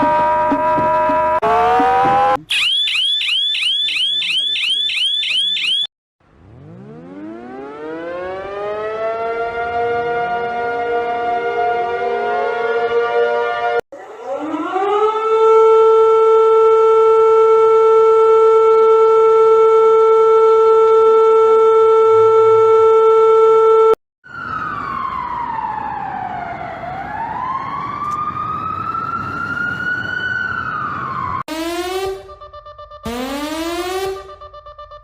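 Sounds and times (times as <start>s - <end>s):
siren held buzzy note: 0.0s - 13.8s, 31.5s - 35.0s
siren wailing up and down: 0.0s - 35.0s.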